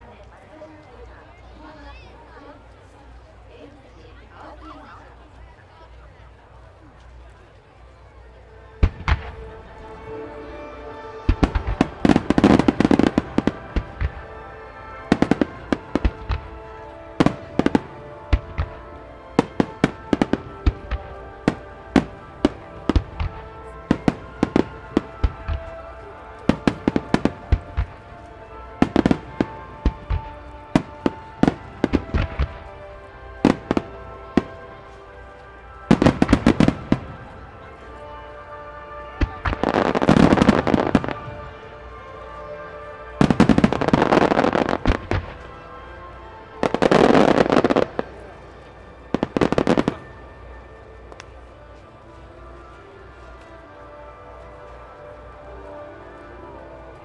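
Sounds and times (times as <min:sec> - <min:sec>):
music: 0:00.0 - 0:57.0
fireworks crackling: 0:00.1 - 0:57.0
fireworks bangs: 0:08.8 - 0:50.4.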